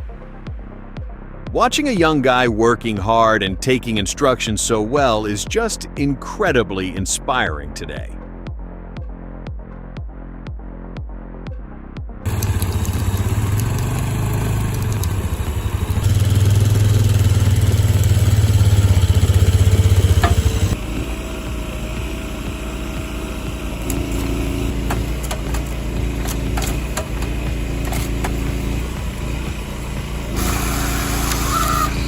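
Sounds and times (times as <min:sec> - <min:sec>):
loud pulsing engine: 0:12.2 - 0:32.0
steady engine: 0:12.2 - 0:32.0.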